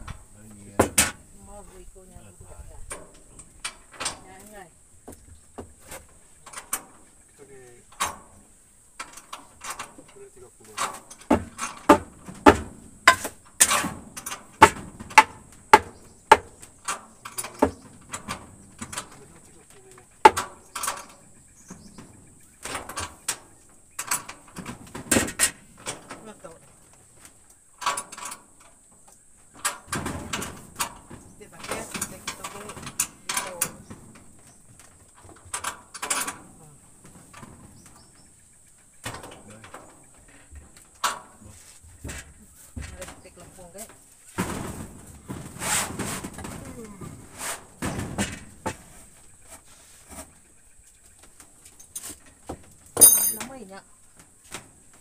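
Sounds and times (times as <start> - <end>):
sharp knocks and clatters: 0.0 - 1.2, 2.9 - 7.2, 7.9 - 53.6
hammering nails: 10.9 - 16.7, 17.3 - 17.8.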